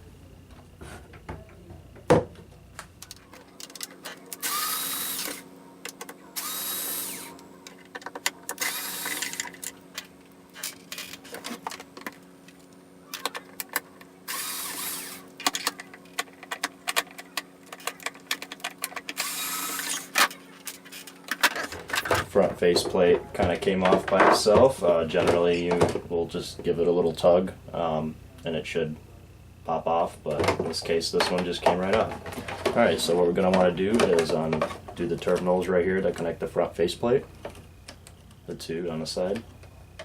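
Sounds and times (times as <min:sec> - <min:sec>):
power screwdriver whirring: 0:04.3 - 0:05.4, 0:06.4 - 0:07.4, 0:08.5 - 0:09.7, 0:14.3 - 0:15.8, 0:19.1 - 0:20.4.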